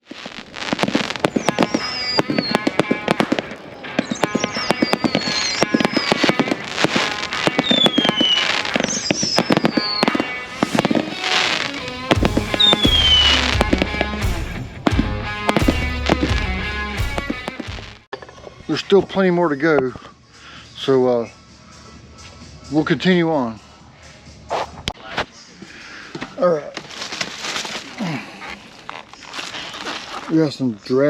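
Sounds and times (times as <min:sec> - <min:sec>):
falling firework whistles: 0:00.0 - 0:14.7
fireworks crackling and popping: 0:00.0 - 0:18.1, 0:26.1 - 0:30.8
music: 0:01.0 - 0:26.2
heavy bass beat: 0:11.3 - 0:18.0.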